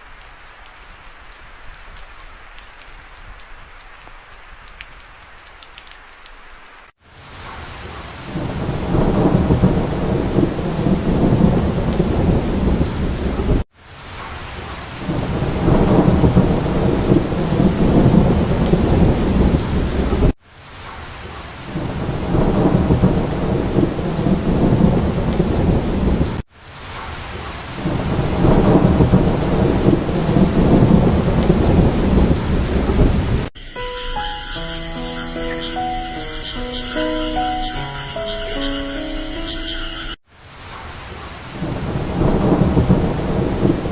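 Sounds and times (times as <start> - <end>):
heavy rain: 0.0 - 33.6, 34.2 - 43.9
deep rolling thunder: 8.3 - 13.6, 15.0 - 20.4, 21.7 - 26.4, 27.8 - 33.5, 41.6 - 43.9
music: 33.6 - 40.2.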